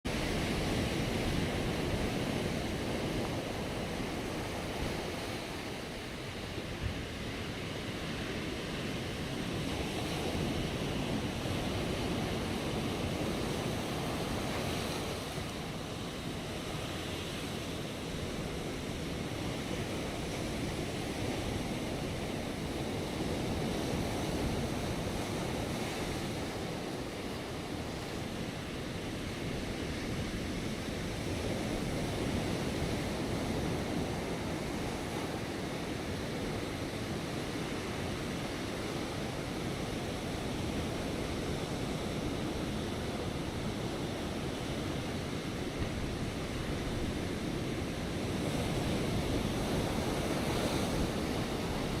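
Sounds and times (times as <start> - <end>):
ocean waves breaking on rocks: 0.1 - 52.0.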